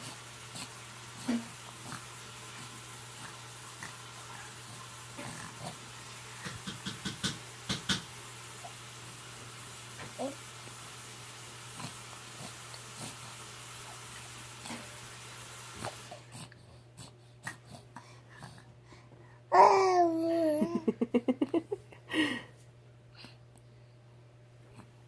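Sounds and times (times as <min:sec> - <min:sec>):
infant babbling: 0:19.5 - 0:20.7.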